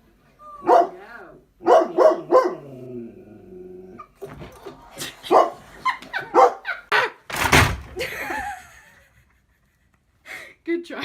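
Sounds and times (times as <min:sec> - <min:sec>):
dog barking: 0:00.6 - 0:01.0, 0:01.6 - 0:02.7, 0:05.3 - 0:05.6, 0:06.3 - 0:07.1
loud thump: 0:07.3 - 0:08.0.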